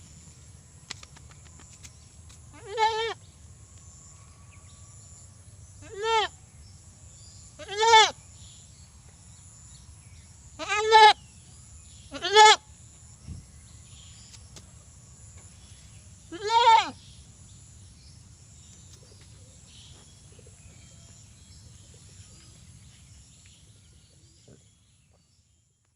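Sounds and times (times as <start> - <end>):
goat bleating: 2.6 - 3.2, 5.8 - 6.3, 7.6 - 8.1, 10.6 - 11.2, 12.1 - 12.6, 16.3 - 17.0.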